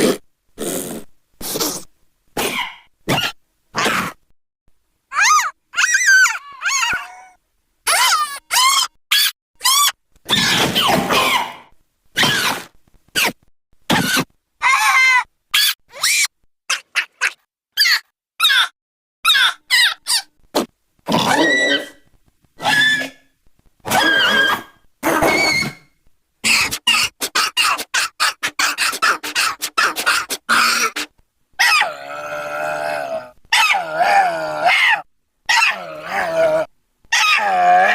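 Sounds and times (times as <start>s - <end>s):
drawn-out wavering vocal cries: 5.1s - 9.0s, 26.4s - 37.9s
creature-like squeaks and squeals: 5.1s - 22.0s, 22.6s - 23.2s, 23.9s - 31.9s, 33.6s - 37.9s.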